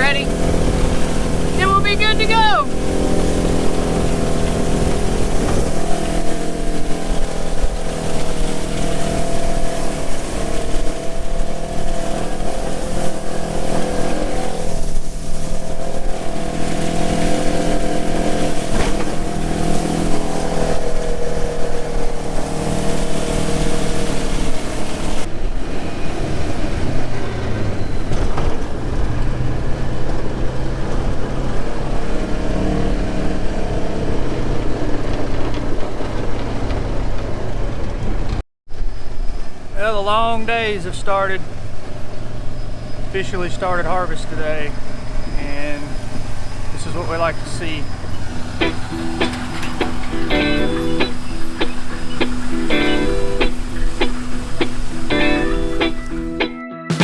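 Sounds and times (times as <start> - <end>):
heavy diesel engine under load: 0.0 - 56.5.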